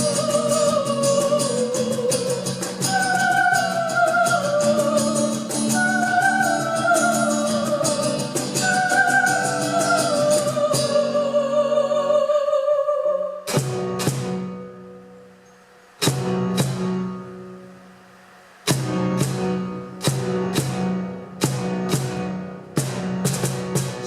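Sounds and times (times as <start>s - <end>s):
drum beat with hi-hat: 18.7s - 24.0s.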